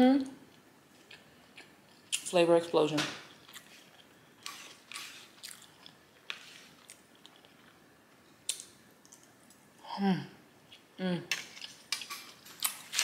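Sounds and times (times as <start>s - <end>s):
mouth chewing food: 3.3s - 7.8s.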